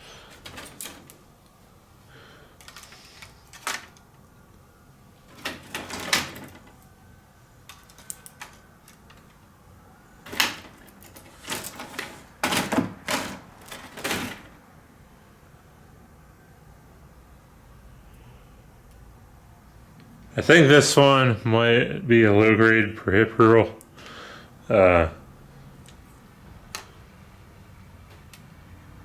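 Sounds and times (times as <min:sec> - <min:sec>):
circuit boards clattering together: 0:00.3 - 0:01.2, 0:02.6 - 0:04.1, 0:05.3 - 0:06.8, 0:10.2 - 0:14.6.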